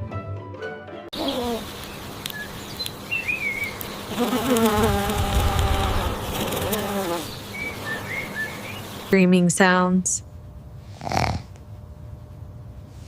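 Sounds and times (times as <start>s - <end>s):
background music: 0.0s - 1.1s
bird chirps: 1.2s - 4.0s, 7.2s - 9.1s
insect-like buzz: 1.2s - 9.2s.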